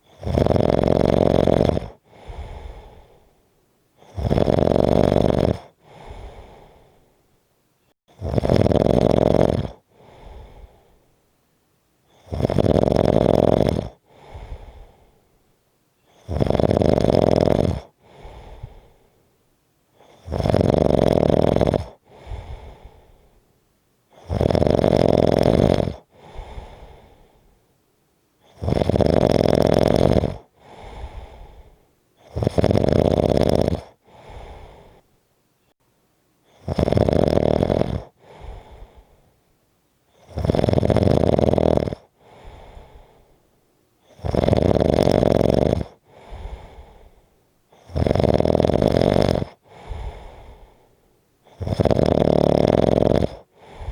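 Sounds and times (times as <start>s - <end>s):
person snoring: 0.0s - 3.2s, 4.0s - 6.9s, 8.1s - 10.9s, 12.1s - 15.1s, 16.1s - 18.9s, 20.0s - 23.1s, 24.1s - 27.4s, 28.4s - 35.0s, 36.5s - 39.1s, 40.2s - 43.2s, 44.1s - 47.1s, 47.7s - 50.8s, 51.5s - 53.9s
soft breath sound: 1.8s - 4.2s, 5.7s - 8.0s, 9.8s - 11.3s, 13.9s - 16.3s, 17.8s - 20.3s, 21.8s - 24.3s, 26.0s - 28.6s, 30.4s - 32.3s, 33.9s - 35.8s, 38.0s - 40.3s, 42.0s - 44.3s, 45.9s - 48.0s, 49.5s - 51.7s, 53.3s - 53.9s.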